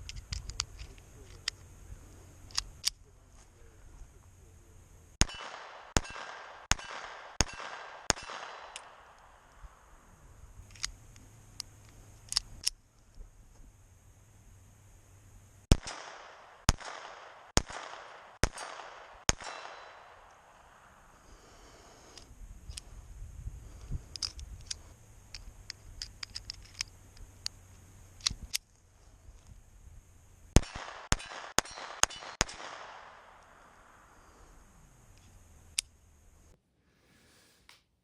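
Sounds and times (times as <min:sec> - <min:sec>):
small metallic clicks: 0:00.0 - 0:01.7, 0:02.4 - 0:03.0, 0:10.6 - 0:13.2, 0:23.7 - 0:29.5
pistol shots with ringing tail: 0:05.2 - 0:09.9, 0:15.7 - 0:21.0, 0:30.6 - 0:34.0.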